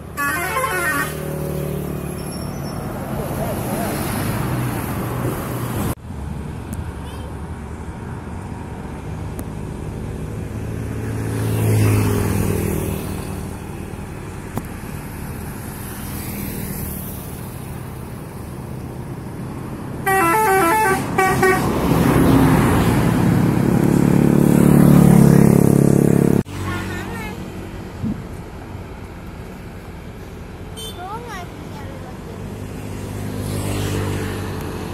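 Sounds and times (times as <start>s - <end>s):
bus engine passing: 0.0s - 34.9s
road traffic rumbling: 0.0s - 34.9s
bus multi-tone horn tune: 0.1s - 1.4s, 20.0s - 22.0s
vehicle passing: 0.7s - 6.5s, 7.9s - 28.4s, 31.2s - 34.9s.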